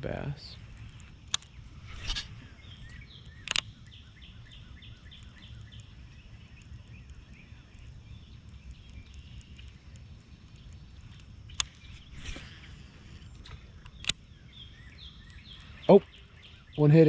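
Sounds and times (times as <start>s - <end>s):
bird chirping: 0.0s - 17.0s
low outdoor rumble: 0.0s - 17.0s
sharp clicks: 0.7s - 14.3s
brief rustle: 0.8s - 2.5s, 11.6s - 13.6s.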